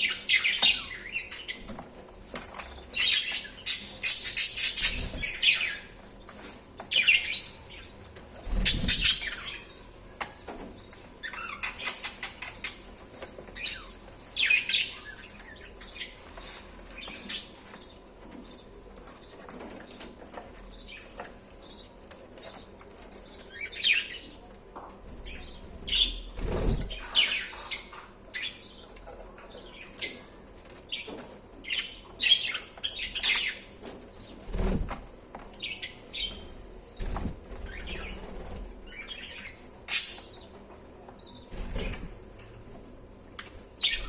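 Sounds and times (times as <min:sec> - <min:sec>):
budgerigars chirping: 0:06.9 - 0:09.8.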